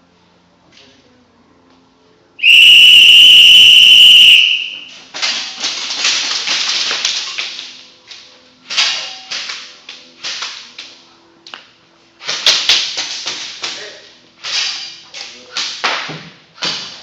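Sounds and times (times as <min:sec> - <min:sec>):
whistle blast: 0:02.4 - 0:05.0.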